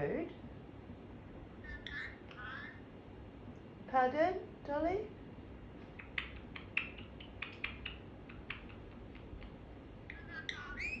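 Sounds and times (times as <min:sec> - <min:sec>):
parrot clicking and chirping: 0:05.9 - 0:11.0.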